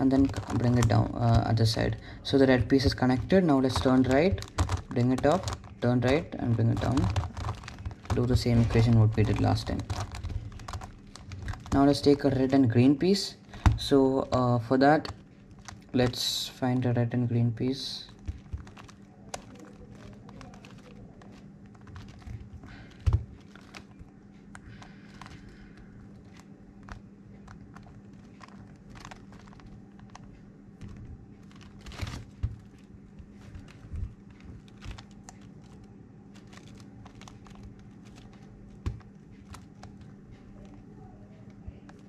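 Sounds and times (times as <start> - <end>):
plastic puzzle clicking: 0.0 - 1.9, 2.8 - 12.6, 18.0 - 40.8.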